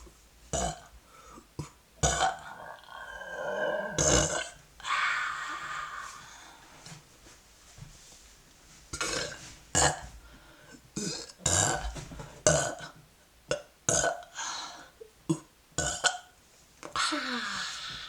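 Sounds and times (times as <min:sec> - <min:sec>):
woman burping: 0:01.6 - 0:04.6, 0:17.0 - 0:18.0.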